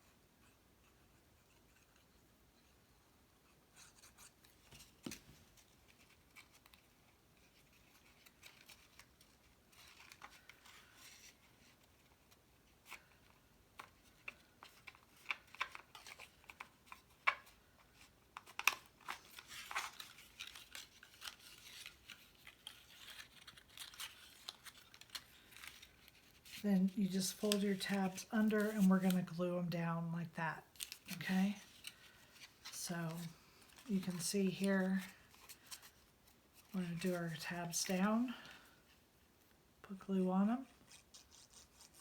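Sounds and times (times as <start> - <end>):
paper rustling: 4.0 - 29.4, 30.7 - 38.4
cardstock being folded: 4.4 - 29.4, 30.6 - 38.3.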